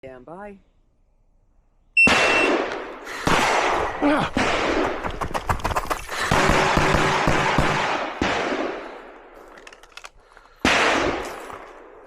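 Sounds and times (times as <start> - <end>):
handgun shots with echo: 2.0 - 3.8.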